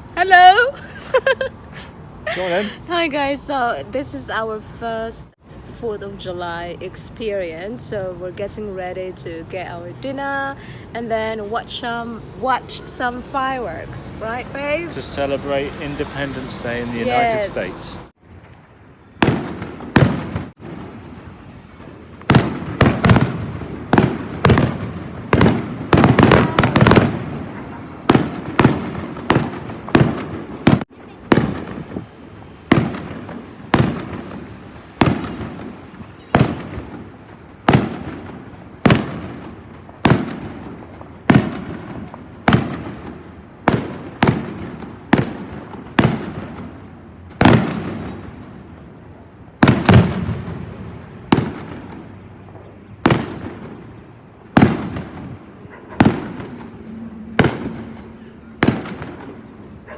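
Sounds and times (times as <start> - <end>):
fireworks bursting: 0.0 - 59.9.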